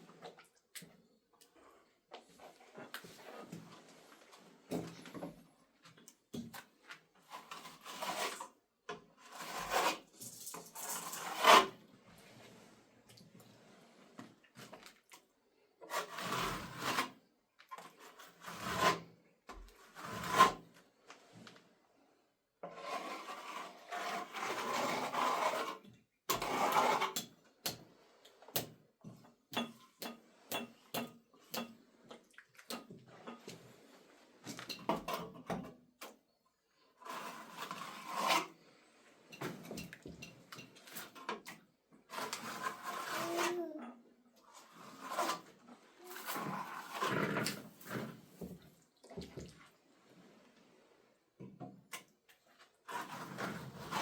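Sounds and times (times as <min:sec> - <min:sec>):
plaster scraping on wall: 0:07.3 - 0:08.6, 0:09.2 - 0:11.8, 0:15.8 - 0:17.2, 0:17.8 - 0:21.4, 0:22.6 - 0:32.0, 0:37.0 - 0:38.7, 0:42.1 - 0:43.6, 0:44.5 - 0:49.5, 0:52.5 - 0:54.0.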